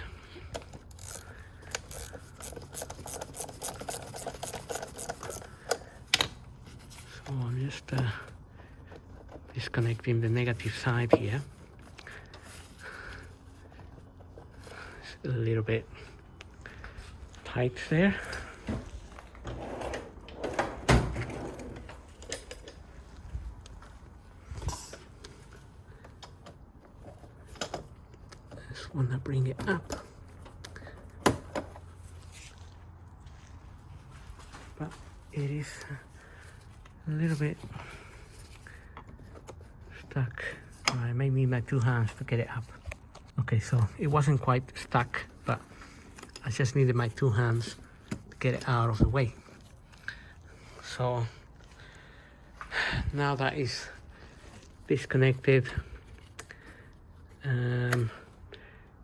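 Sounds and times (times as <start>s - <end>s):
hand tool clicking and scraping: 0.5s - 6.4s.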